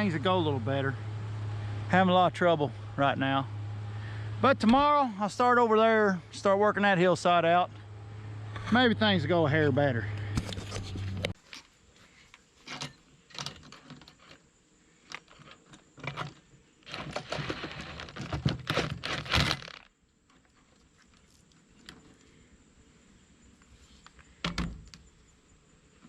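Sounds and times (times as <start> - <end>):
low hum: 0.0 - 11.4.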